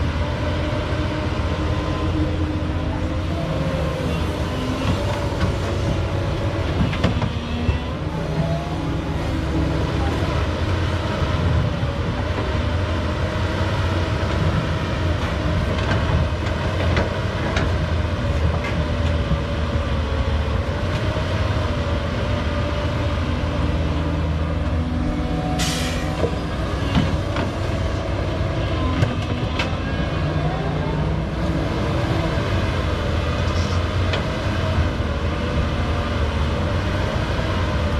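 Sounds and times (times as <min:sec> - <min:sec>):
diesel engine running under load: 0:00.0 - 0:37.9.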